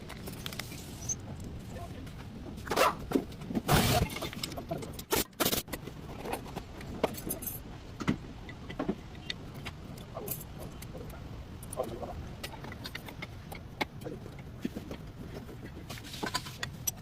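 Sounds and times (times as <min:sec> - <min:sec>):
metal tools clinking and clattering: 0:07.1 - 0:07.6.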